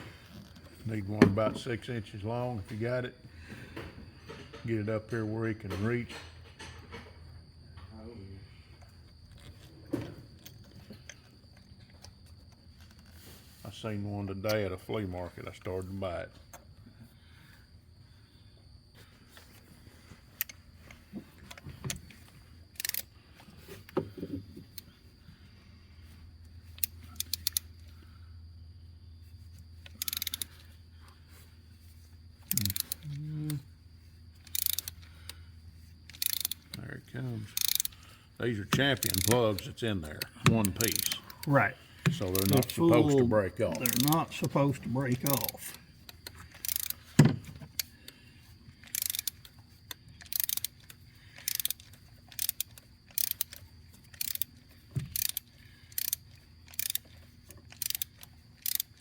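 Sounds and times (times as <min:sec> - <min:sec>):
socket ratchet clicking: 0:21.5 - 0:23.1, 0:26.6 - 0:27.9, 0:29.8 - 0:30.7, 0:32.4 - 0:33.2, 0:34.4 - 0:35.4, 0:36.0 - 0:36.8, 0:37.4 - 0:38.0, 0:38.6 - 0:59.0.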